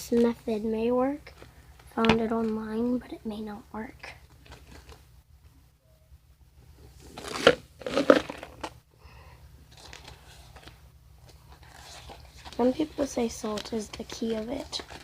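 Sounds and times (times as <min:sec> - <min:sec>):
crunching and rustling handling: 0:07.0 - 0:08.7, 0:09.7 - 0:15.0.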